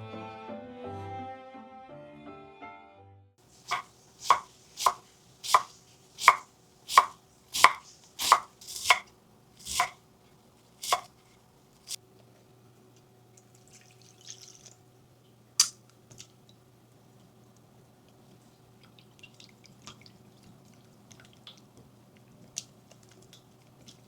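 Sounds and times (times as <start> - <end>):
knife chopping cabbage on board: 3.7 - 10.0, 10.8 - 11.1.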